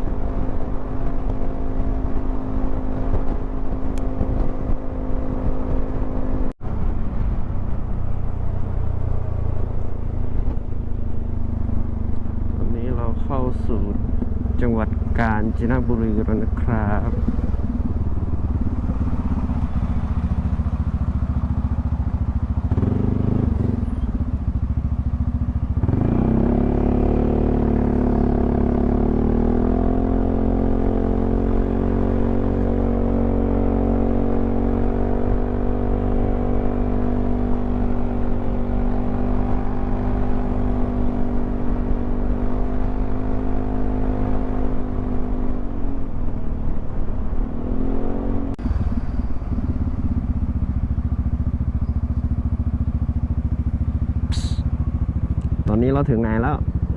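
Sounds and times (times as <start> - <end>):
scooter engine running: 13.6 - 29.2, 48.6 - 56.9.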